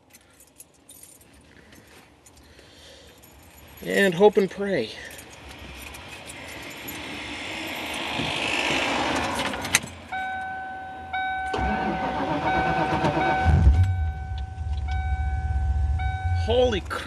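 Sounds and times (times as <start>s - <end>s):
warning chime: 10.1s - 17.0s
car engine running: 11.5s - 17.0s.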